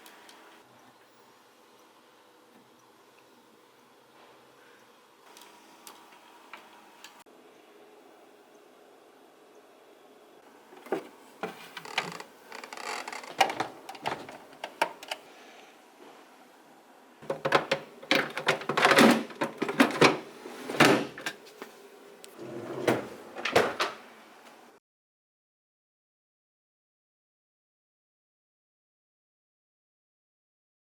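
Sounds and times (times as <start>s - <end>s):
plastic parts clicking and rattling: 10.8s - 15.2s, 17.2s - 20.3s.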